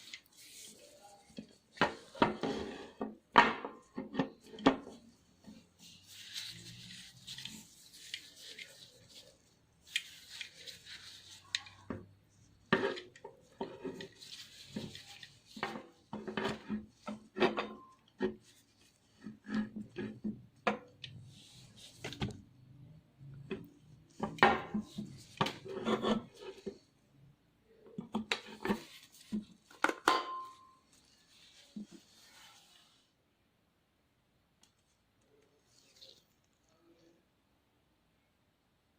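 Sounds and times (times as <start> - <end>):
camera parts clicking and rubbing: 9.8 - 11.4.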